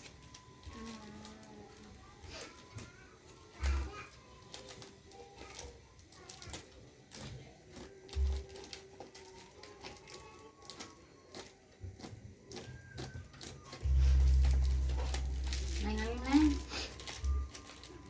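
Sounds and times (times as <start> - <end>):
hands handling package clicks: 3.5 - 18.0
loud low rumble: 13.9 - 16.7.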